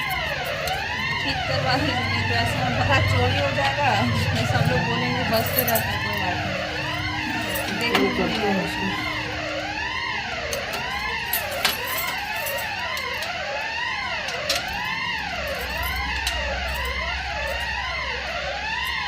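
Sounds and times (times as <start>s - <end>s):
electronic alarm siren wailing: 0.0s - 19.0s.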